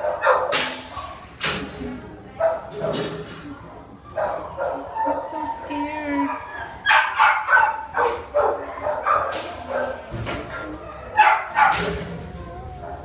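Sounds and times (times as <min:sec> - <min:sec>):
dog barking: 0:00.0 - 0:00.7, 0:02.4 - 0:02.9, 0:04.2 - 0:04.9, 0:06.3 - 0:12.0.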